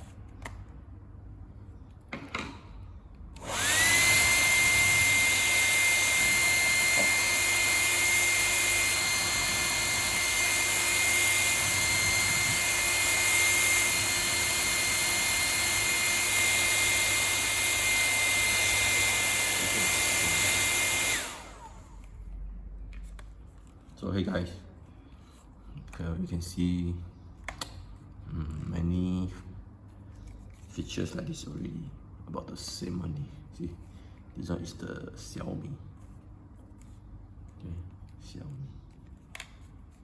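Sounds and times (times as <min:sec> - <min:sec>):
hair dryer running: 0:03.4 - 0:22.2.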